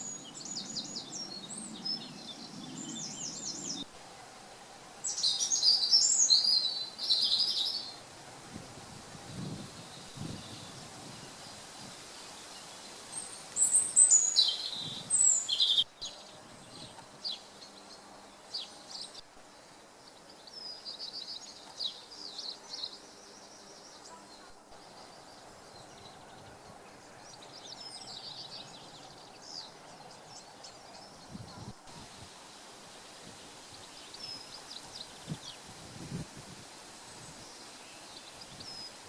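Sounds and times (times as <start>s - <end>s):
birds singing and calling: 0.0s - 3.9s, 5.0s - 8.0s, 13.2s - 19.2s, 20.1s - 31.8s
faint steady background noise: 0.0s - 39.0s.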